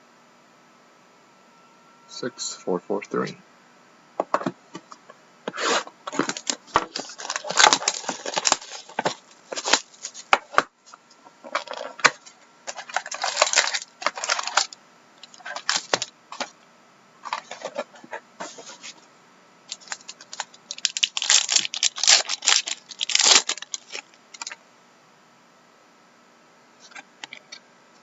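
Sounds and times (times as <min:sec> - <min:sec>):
cards rustling: 0:05.5 - 0:10.6, 0:11.4 - 0:16.5, 0:17.2 - 0:19.0, 0:19.7 - 0:24.6
wrappers crinkling and tearing: 0:05.7 - 0:10.6, 0:11.4 - 0:16.5, 0:19.7 - 0:24.6.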